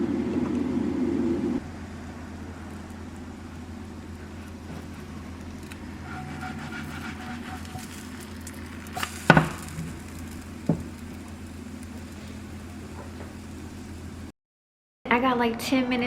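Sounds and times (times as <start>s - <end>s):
steady low hum: 0.0s - 14.3s
food sizzling in a pan: 1.6s - 14.3s.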